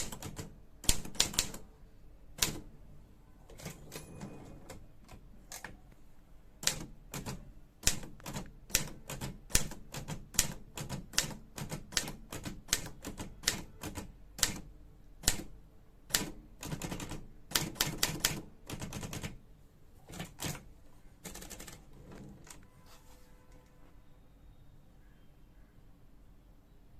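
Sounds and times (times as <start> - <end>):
manual typewriter keystrikes: 0.0 - 1.6, 3.5 - 5.8, 6.6 - 15.5, 16.1 - 19.4, 20.1 - 20.6, 21.2 - 22.7.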